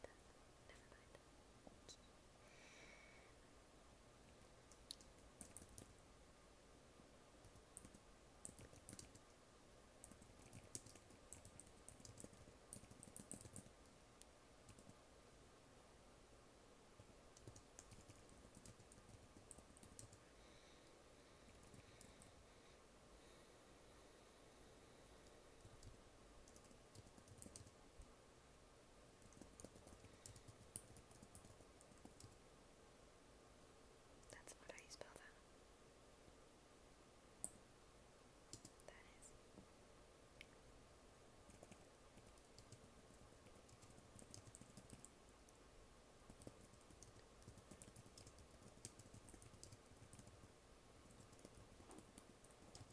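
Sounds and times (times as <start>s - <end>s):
typing on keyboard: 4.7s - 6.0s, 7.4s - 9.3s, 10.0s - 14.0s, 14.7s - 15.0s, 17.0s - 20.2s, 21.5s - 22.3s, 25.6s - 27.8s, 29.2s - 32.4s, 38.5s - 38.8s, 41.5s - 45.6s, 46.3s - 52.9s.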